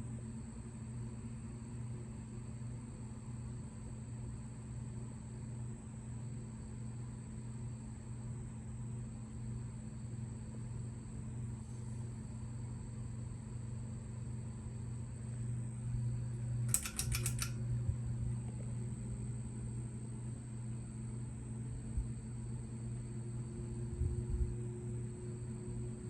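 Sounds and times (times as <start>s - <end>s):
ceiling fan humming: 11.4s - 26.0s
sharp clicks: 16.7s - 17.6s.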